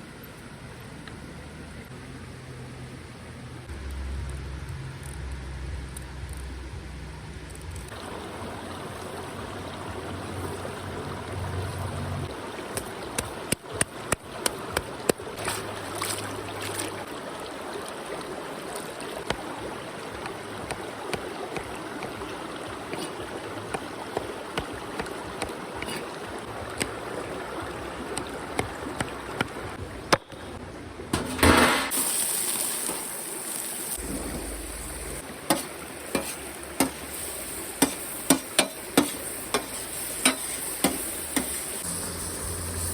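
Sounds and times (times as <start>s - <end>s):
stream rushing: 7.9s - 32.0s, 33.2s - 42.9s.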